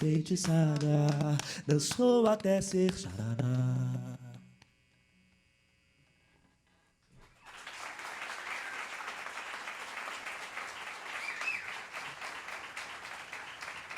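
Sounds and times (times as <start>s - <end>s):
audience clapping: 0.0s - 4.1s, 7.2s - 13.9s.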